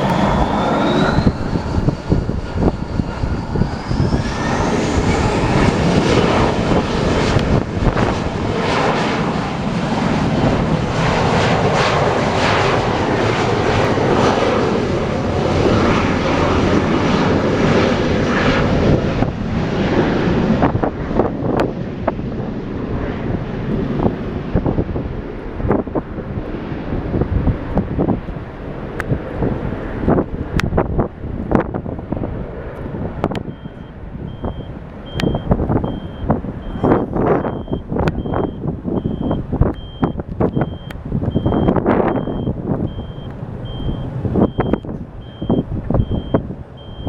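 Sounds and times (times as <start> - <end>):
thin rising whine: 0.0 - 6.8
airplane engines running: 0.0 - 47.0
wind buffeting microphone: 0.0 - 47.0.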